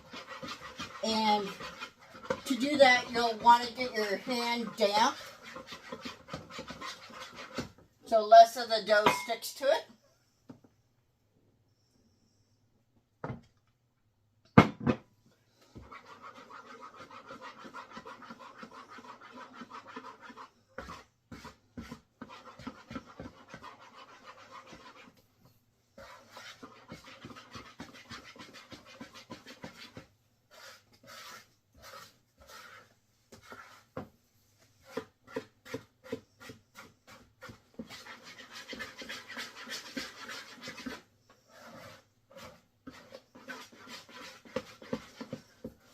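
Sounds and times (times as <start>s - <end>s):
dough squelching and slapping: 0.0s - 7.8s, 26.0s - 34.1s, 34.8s - 45.9s.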